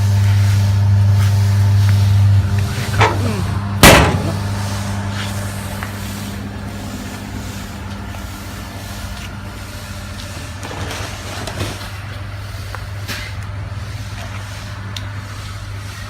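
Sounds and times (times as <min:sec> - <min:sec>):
loud metal bang: 0:02.9 - 0:04.8.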